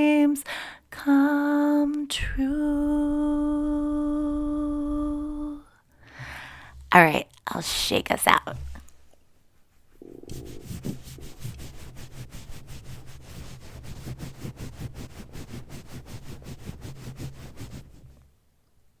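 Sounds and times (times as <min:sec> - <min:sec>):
microphone handling rumble: 0:02.2 - 0:05.7, 0:10.0 - 0:11.7
skin rubbing against microphone: 0:08.5 - 0:18.2.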